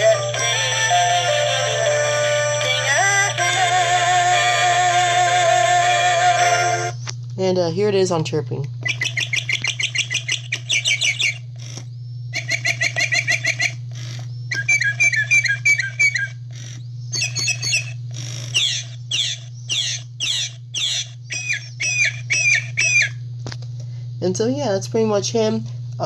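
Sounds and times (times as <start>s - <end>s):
low steady hum: 0.0s - 26.0s
toy bird chirping song: 8.8s - 11.5s, 12.3s - 13.8s, 14.5s - 23.2s.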